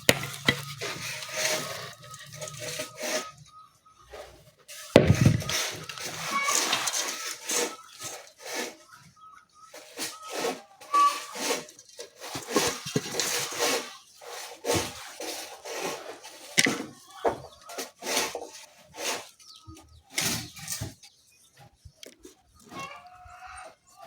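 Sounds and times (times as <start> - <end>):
charcoal being pounded: 0.0 - 3.3, 4.9 - 7.2.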